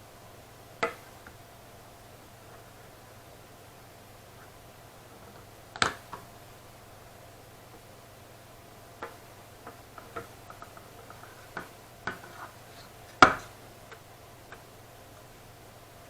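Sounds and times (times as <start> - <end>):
clicks and taps of handling: 0.8 - 1.4, 9.0 - 14.7.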